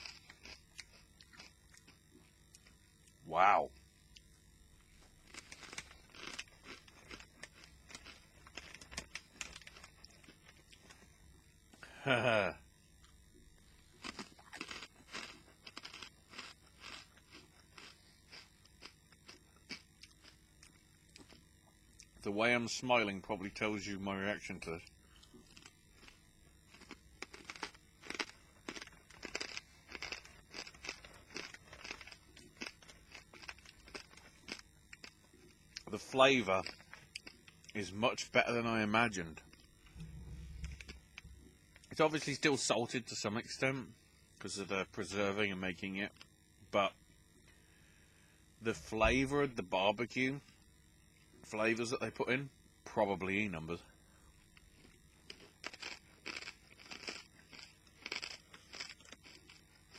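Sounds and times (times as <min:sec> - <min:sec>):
crisp crunches of chewing: 0:00.0 - 0:03.2, 0:04.1 - 0:11.1, 0:13.0 - 0:22.2, 0:24.6 - 0:37.9, 0:39.4 - 0:42.0, 0:54.4 - 0:59.9.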